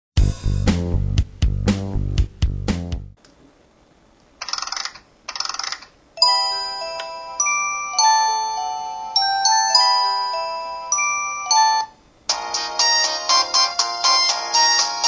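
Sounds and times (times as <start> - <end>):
bell-like ringtone melody: 6.2 - 15.0.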